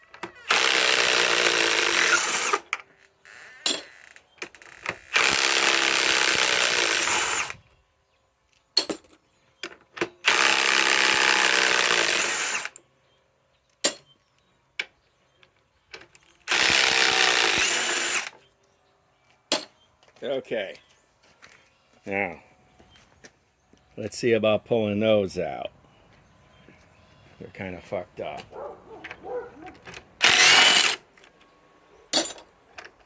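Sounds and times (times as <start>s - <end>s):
impact wrench running: 0.5s - 2.7s, 5.0s - 7.6s, 10.2s - 12.8s, 16.5s - 18.4s, 30.2s - 31.1s.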